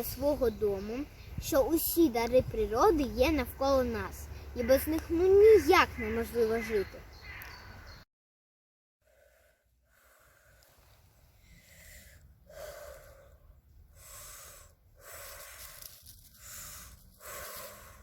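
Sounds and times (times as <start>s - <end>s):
boy breathing deeply: 9.0s - 18.0s.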